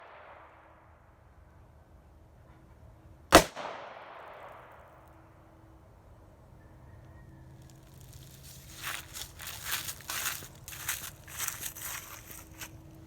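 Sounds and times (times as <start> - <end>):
handgun shot with echo: 3.3 - 4.8.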